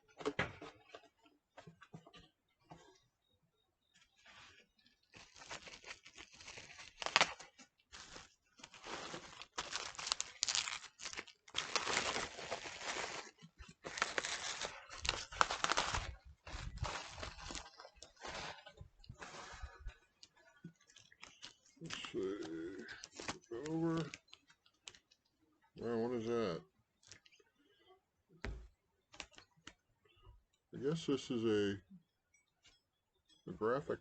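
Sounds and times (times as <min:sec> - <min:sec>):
packing material crinkling and tearing: 0:04.2 - 0:25.2.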